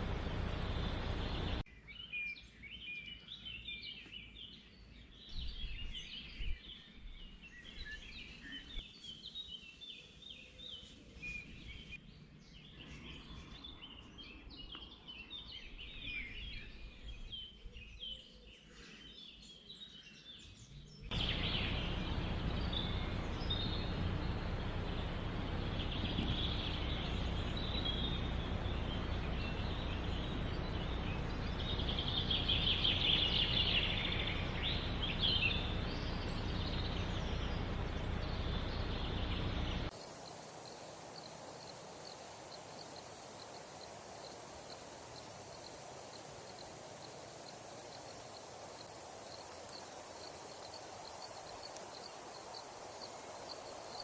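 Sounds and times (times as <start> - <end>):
steady rushing noise: 0.0 - 1.6, 21.1 - 54.0.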